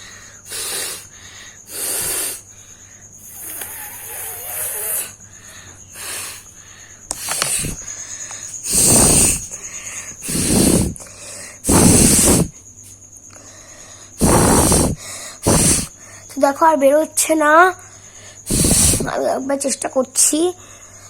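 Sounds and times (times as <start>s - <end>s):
person blowing nose: 0.5s - 1.1s, 1.7s - 2.4s, 3.2s - 5.2s, 6.0s - 6.5s, 7.1s - 7.8s, 8.5s - 9.6s, 10.2s - 11.0s, 11.6s - 12.5s, 14.2s - 16.0s, 18.5s - 19.1s.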